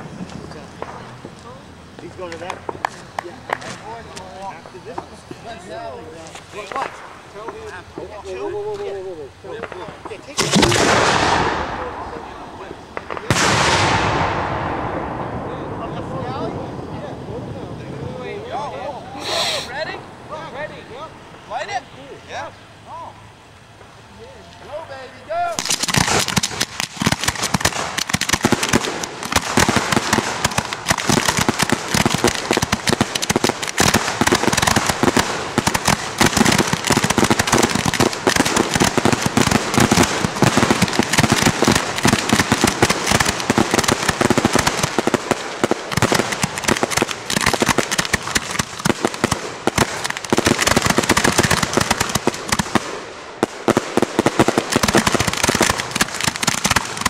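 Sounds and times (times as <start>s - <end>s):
fireworks launches and bursts: 0.0s - 57.0s.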